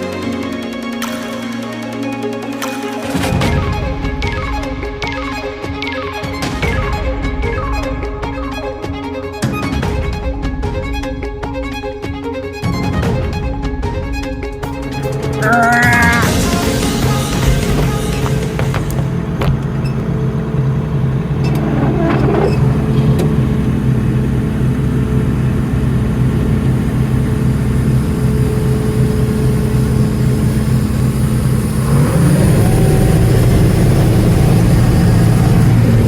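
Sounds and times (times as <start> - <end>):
farm machinery engine running: 13.9 - 36.0.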